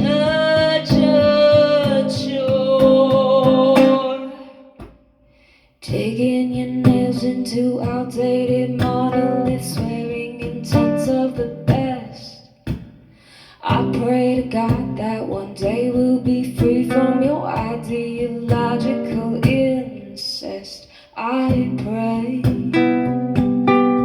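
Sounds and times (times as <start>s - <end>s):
woman singing: 0.0s - 4.9s, 5.8s - 12.7s, 13.3s - 24.0s
acoustic guitar strumming: 0.0s - 5.0s, 5.9s - 12.8s, 21.5s - 24.0s.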